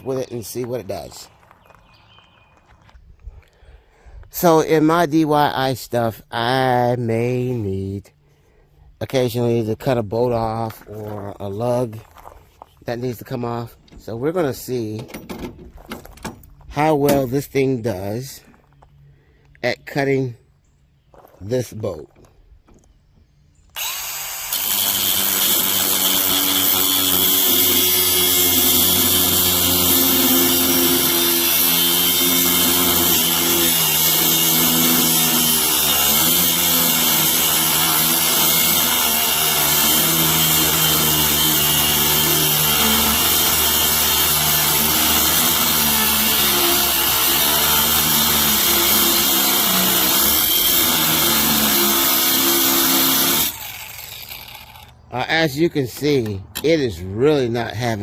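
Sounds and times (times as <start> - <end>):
angle grinder cutting metal: 23.8 - 55.0.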